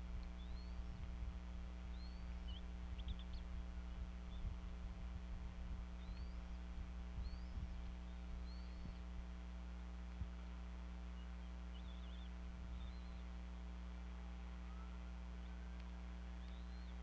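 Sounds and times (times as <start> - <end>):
steady electrical hum: 0.0 - 17.0
eaglet chicks peeping: 1.8 - 3.6, 6.0 - 9.0, 11.2 - 13.3.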